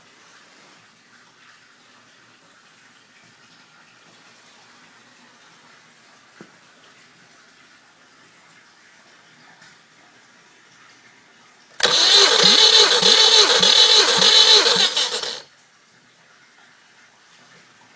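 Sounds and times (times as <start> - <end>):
engine cranking by starter motor: 11.8 - 15.4.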